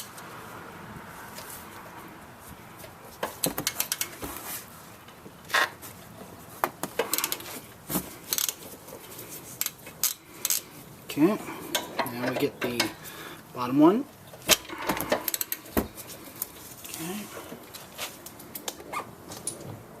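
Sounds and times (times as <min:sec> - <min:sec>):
ratchet wrench clicking: 0:08.3 - 0:08.6, 0:09.6 - 0:10.6
metal tools clinking: 0:11.7 - 0:13.0.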